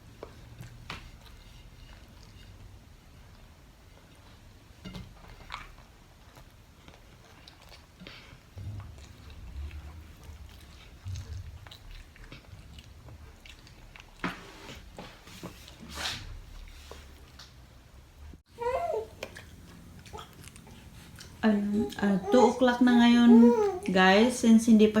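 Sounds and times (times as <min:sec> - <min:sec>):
toddler chewing: 0:05.2 - 0:15.8, 0:18.5 - 0:24.3.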